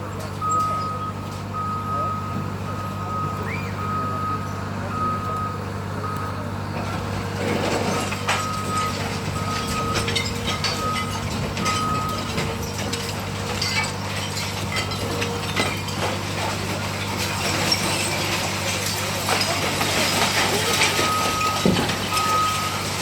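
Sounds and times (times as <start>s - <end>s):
demolition debris crunching: 0.0s - 23.0s
heavy diesel machinery running: 0.0s - 23.0s
reversing alarm beeping: 0.4s - 6.5s, 8.3s - 13.9s, 21.0s - 22.9s.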